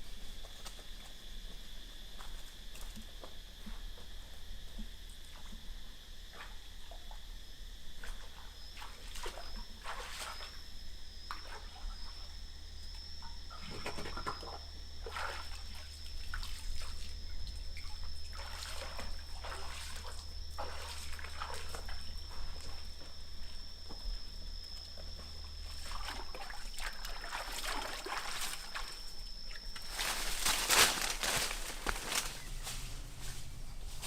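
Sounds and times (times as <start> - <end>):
water splashing and sloshing: 8.0 - 12.4, 13.2 - 33.3.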